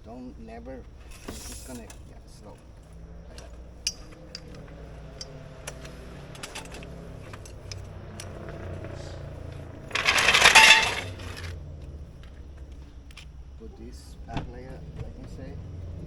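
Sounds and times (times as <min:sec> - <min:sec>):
metallic clattering rattle: 0:00.9 - 0:11.6
metal tools clinking: 0:02.8 - 0:11.6.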